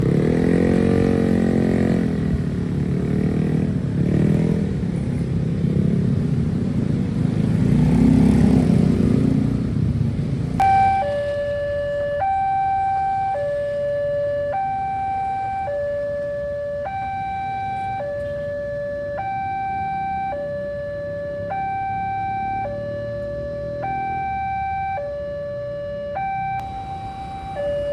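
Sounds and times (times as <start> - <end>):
motorcycles and cars passing: 0.0 - 27.9
level crossing two-tone alarm: 10.6 - 27.9.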